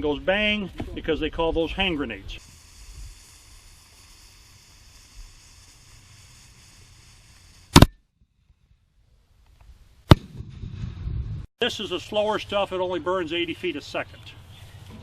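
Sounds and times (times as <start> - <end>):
loud sharp click: 7.8 - 8.0.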